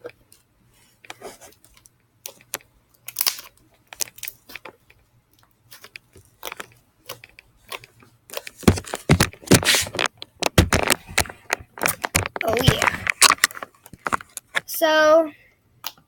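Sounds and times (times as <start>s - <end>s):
slime crackling and popping: 1.8s - 14.5s.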